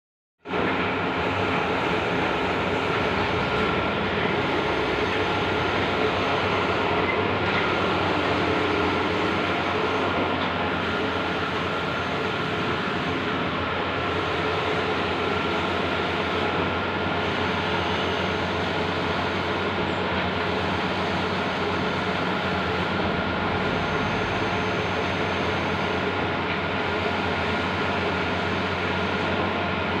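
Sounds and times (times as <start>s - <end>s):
printer whir and hum: 0.4s - 30.0s
print head carriage sweeping: 0.6s - 16.6s.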